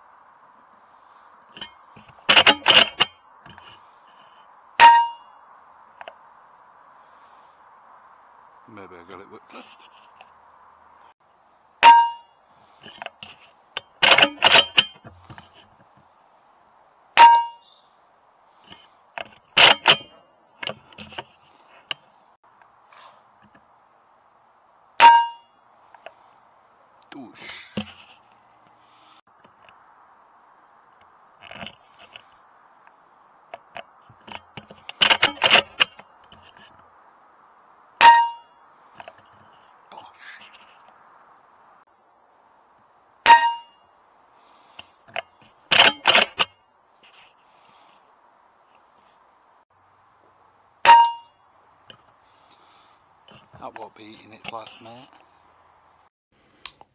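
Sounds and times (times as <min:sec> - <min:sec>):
metallic ring: 0:01.6 - 0:03.7, 0:04.8 - 0:05.4, 0:11.8 - 0:15.1, 0:17.2 - 0:17.8, 0:19.6 - 0:21.2, 0:25.0 - 0:25.6, 0:34.3 - 0:36.5, 0:38.0 - 0:38.6, 0:43.2 - 0:43.9, 0:45.7 - 0:46.6, 0:50.8 - 0:51.4.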